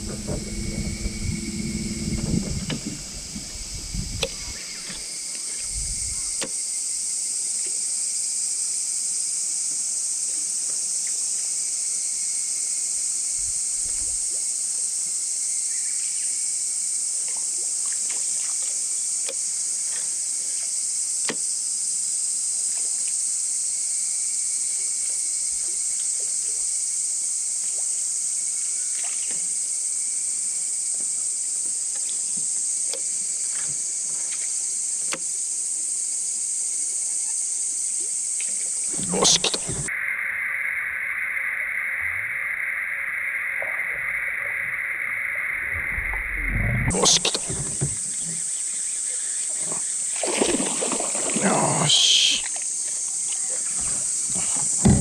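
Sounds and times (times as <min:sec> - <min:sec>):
insects singing: 0:38.8 - 0:55.0.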